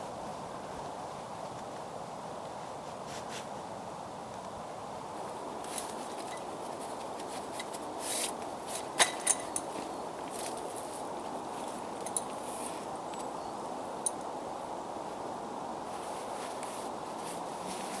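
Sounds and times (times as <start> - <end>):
steady background hiss: 0.0 - 18.0
rustling: 15.9 - 18.0.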